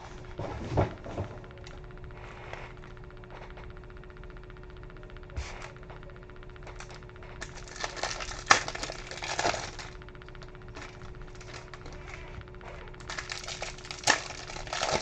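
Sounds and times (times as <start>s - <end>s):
foil wrapper crinkling: 6.7s - 10.0s, 10.8s - 12.1s, 13.0s - 15.0s.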